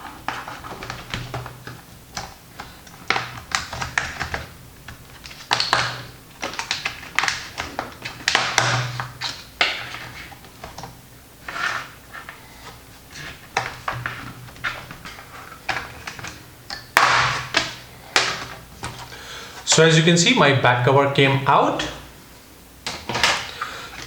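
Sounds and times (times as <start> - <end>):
plastic clips snapping: 0.3 - 10.9, 13.5 - 19.0.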